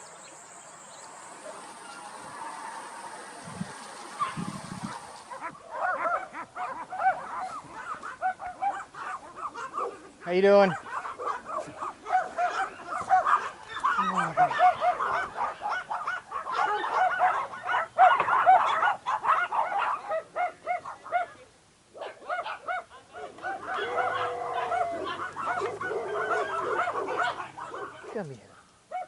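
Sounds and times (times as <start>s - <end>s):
small dogs yapping: 1.0s - 29.0s.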